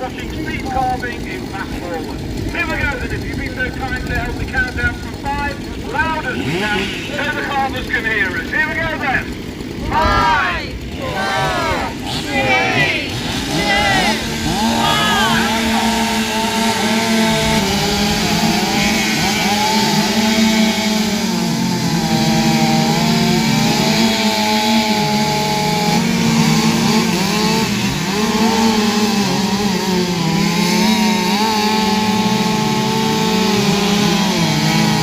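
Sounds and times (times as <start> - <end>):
chainsaws revving and cutting wood: 0.0 - 35.0.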